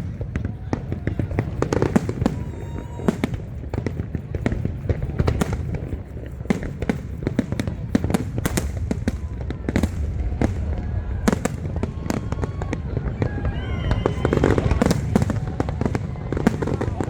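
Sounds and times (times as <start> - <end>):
fireworks bangs and crackles: 0.0 - 17.0.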